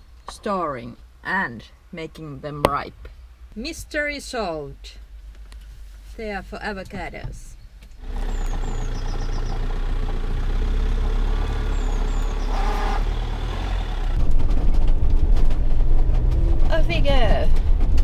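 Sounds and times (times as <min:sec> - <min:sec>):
van engine running: 0:08.0 - 0:18.0.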